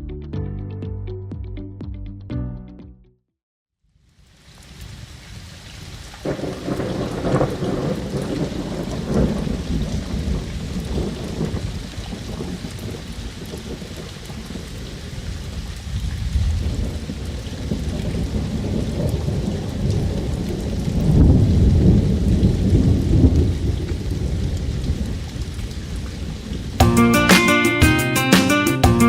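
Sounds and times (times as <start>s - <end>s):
rain falling: 4.0s - 27.9s
low rolling thunder: 6.2s - 26.8s.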